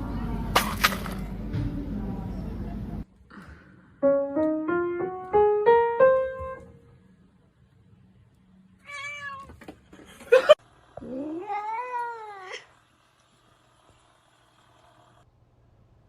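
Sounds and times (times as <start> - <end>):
cat meowing: 8.8 - 9.6, 11.0 - 12.5.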